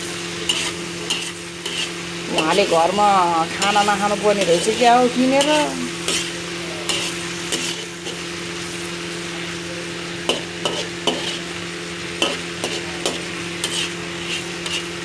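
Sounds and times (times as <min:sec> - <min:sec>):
food sizzling in a pan: 0:00.0 - 0:15.0.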